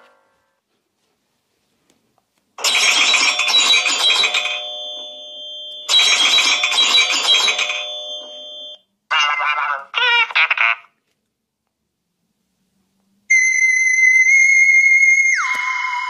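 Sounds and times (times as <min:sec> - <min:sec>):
phone ringtone: 0:02.6 - 0:08.8.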